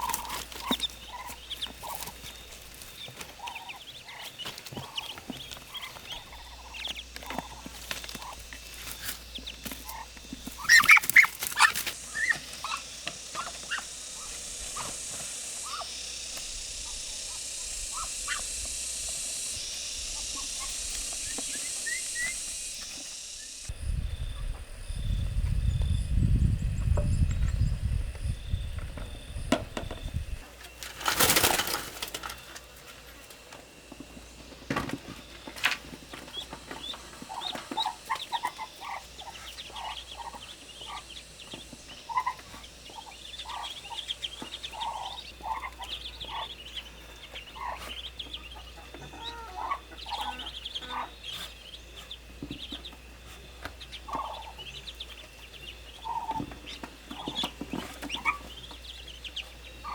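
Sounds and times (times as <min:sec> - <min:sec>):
high peeps: 0:00.0 - 0:23.7.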